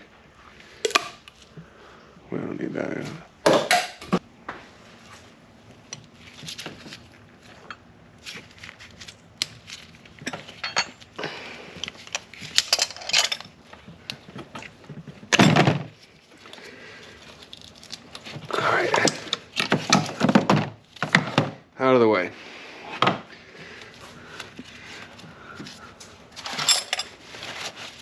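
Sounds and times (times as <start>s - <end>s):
metal tools clicking and clinking: 10.2s - 11.0s, 11.8s - 14.2s, 26.4s - 27.2s.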